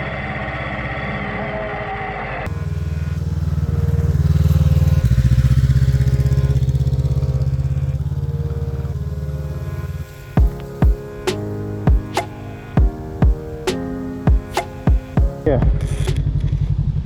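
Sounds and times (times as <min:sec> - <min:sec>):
motorcycle engine running: 0:02.5 - 0:11.0.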